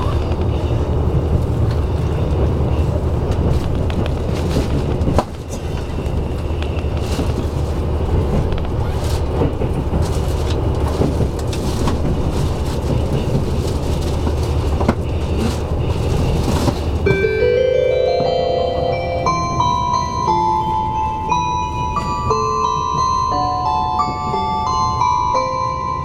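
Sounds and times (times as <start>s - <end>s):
railcar engine and wheels drone: 0.0s - 26.0s
wheels clicking over rail joints: 1.2s - 17.2s.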